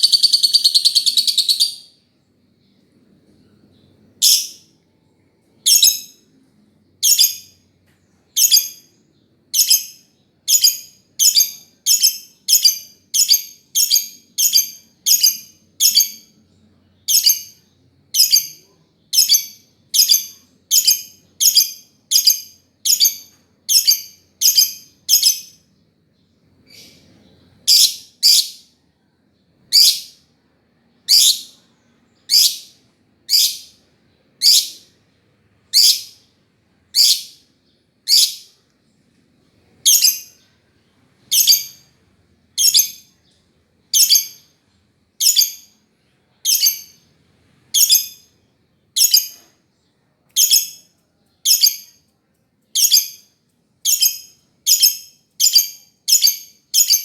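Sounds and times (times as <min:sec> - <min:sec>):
bird high-pitched chirps: 0:00.0 - 0:02.0, 0:04.2 - 0:04.7, 0:05.6 - 0:06.2, 0:07.0 - 0:07.6, 0:08.3 - 0:25.7, 0:26.6 - 0:28.8, 0:29.6 - 0:30.3, 0:31.0 - 0:33.8, 0:34.4 - 0:35.0, 0:35.7 - 0:36.3, 0:36.9 - 0:38.6, 0:39.8 - 0:40.6, 0:41.3 - 0:42.0, 0:42.6 - 0:44.6, 0:45.2 - 0:45.8, 0:46.4 - 0:47.0, 0:47.7 - 0:49.6, 0:50.3 - 0:52.1, 0:52.7 - 0:57.0.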